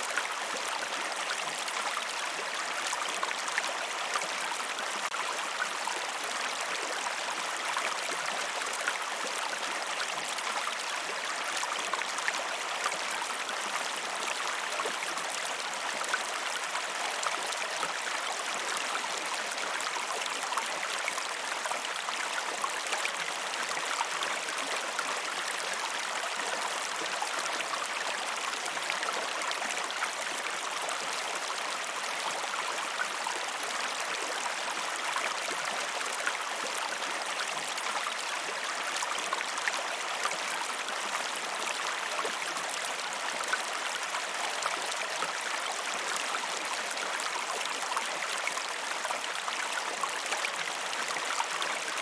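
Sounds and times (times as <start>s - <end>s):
river water rushing and babbling: 0.0s - 52.0s.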